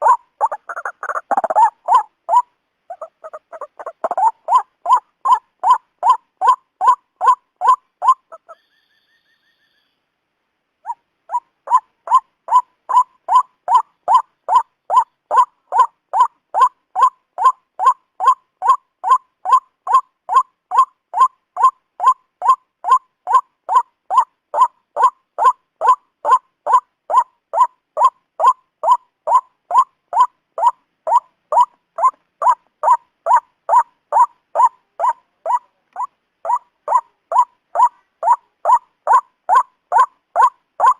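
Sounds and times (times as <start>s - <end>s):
bird calling repeated note: 10.8s - 40.9s.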